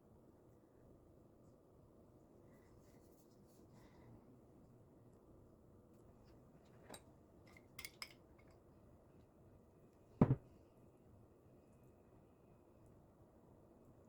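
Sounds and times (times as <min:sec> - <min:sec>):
dull double knock: 0:10.2 - 0:10.5.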